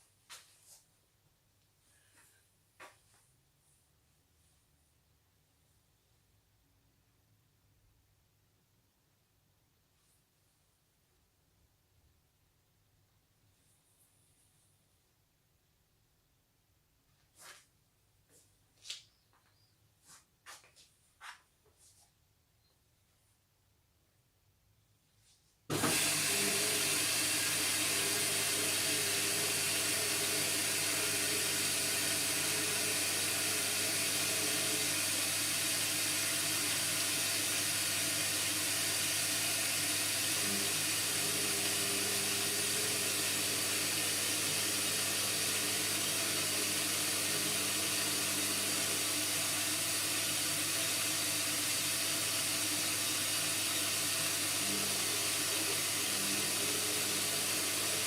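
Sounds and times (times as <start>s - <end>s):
water rushing through inlet valve: 25.7s - 58.0s.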